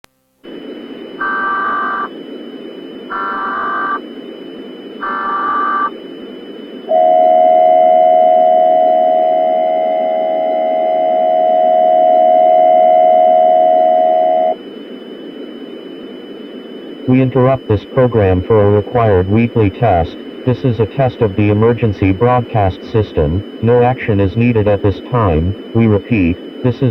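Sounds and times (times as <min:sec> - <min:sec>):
constant hiss: 0:00.3 - 0:06.9, 0:14.4 - 0:26.9
data tone bursts: 0:01.1 - 0:02.2, 0:03.0 - 0:04.1, 0:05.0 - 0:06.0, 0:17.0 - 0:26.9
two-tone attention signal: 0:01.2 - 0:02.1, 0:05.0 - 0:05.9.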